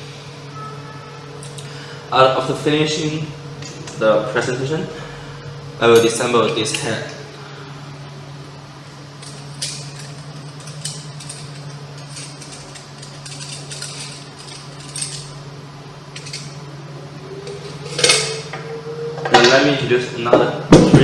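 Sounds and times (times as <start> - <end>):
steady low hum: 0.0 - 21.0
metallic clicks and clinks: 9.2 - 15.4, 16.1 - 16.6.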